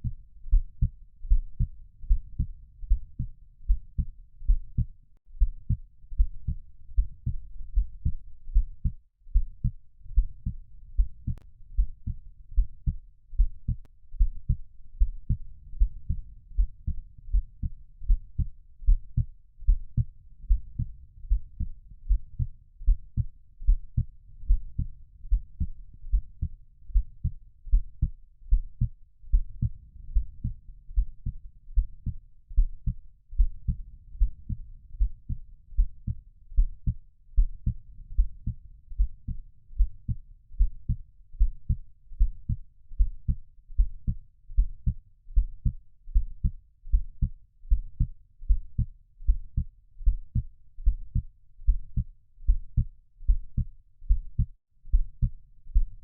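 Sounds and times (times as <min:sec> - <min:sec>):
heartbeat thuds: 0:00.0 - 0:56.0.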